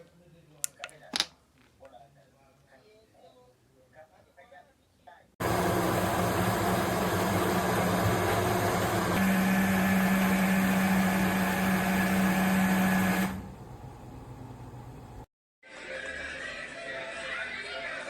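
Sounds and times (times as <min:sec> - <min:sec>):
blender motor humming: 0:05.4 - 0:13.6.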